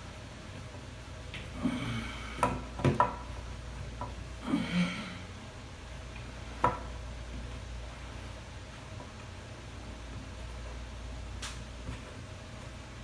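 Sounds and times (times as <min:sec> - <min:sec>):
person grunting: 0:01.5 - 0:02.4, 0:04.4 - 0:05.3.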